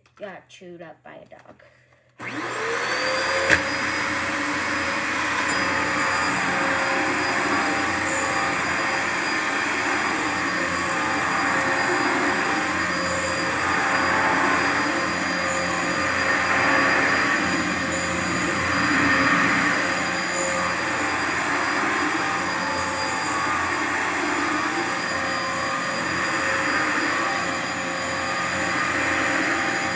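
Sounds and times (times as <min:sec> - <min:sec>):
vacuum cleaner running: 0:02.2 - 0:29.9.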